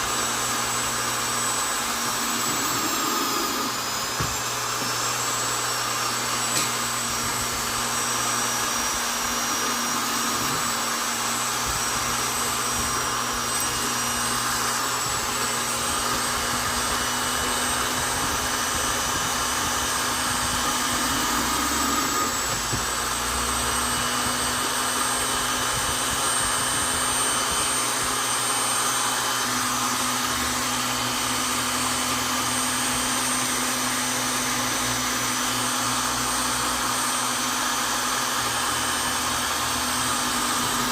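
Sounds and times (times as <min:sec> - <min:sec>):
electric drill whining: 0:00.0 - 0:40.9.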